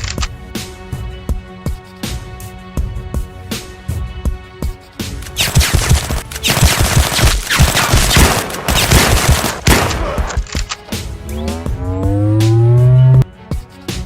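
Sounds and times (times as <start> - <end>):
background music: 0.0 - 14.0
rising tone: 11.1 - 13.2.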